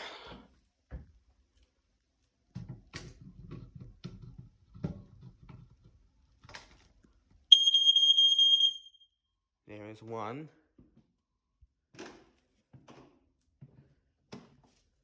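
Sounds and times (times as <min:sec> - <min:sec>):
smoke alarm beeping: 0:07.5 - 0:09.0.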